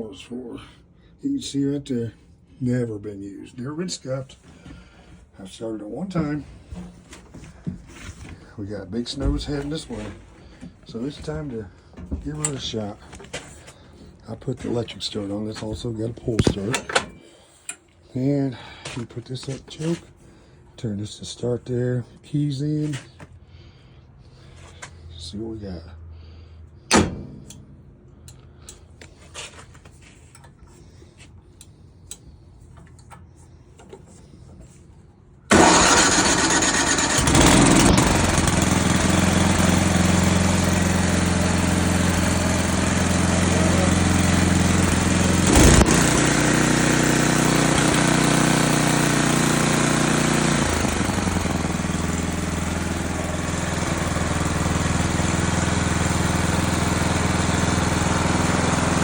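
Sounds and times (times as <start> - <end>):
snow blower engine running: 35.5 - 59.0.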